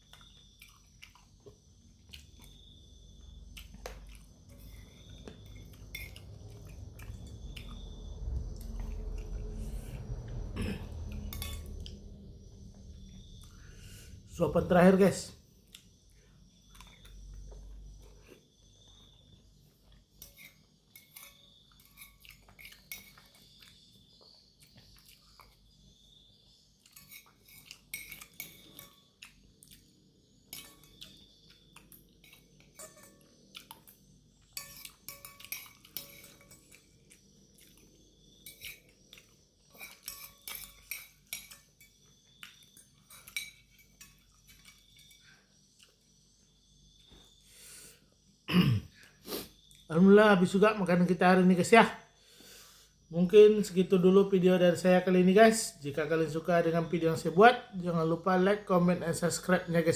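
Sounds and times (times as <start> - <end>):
cutlery clinking against bowl: 4.2 - 7.2, 10.6 - 12.0, 20.2 - 23.8, 26.8 - 29.4, 30.5 - 37.8, 38.4 - 45.2.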